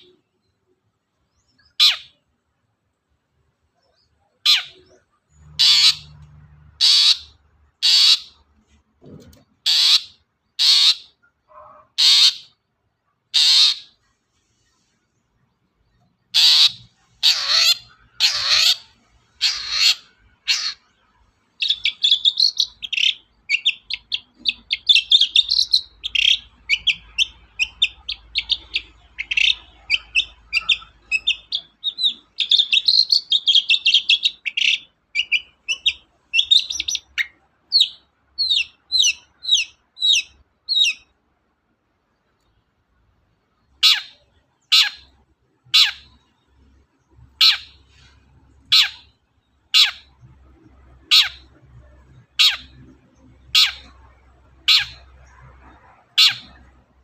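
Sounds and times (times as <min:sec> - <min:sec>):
shrike harsh calls: 0:16.3 - 0:20.8
shrike chattering song: 0:16.4 - 0:21.0, 0:21.6 - 0:41.1, 0:49.7 - 0:56.9.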